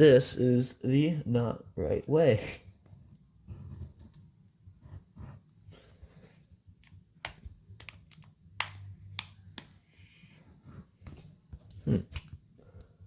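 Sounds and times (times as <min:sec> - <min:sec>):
tool clicking and tapping on phone: 0:06.8 - 0:09.8.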